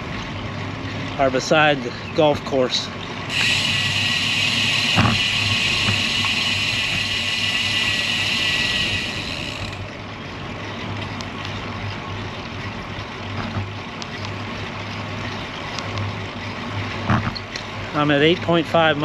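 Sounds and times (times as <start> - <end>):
low rumble of bike: 0.0 - 19.0
road bike tyre hiss: 3.3 - 9.8
bike click: 3.3 - 9.9.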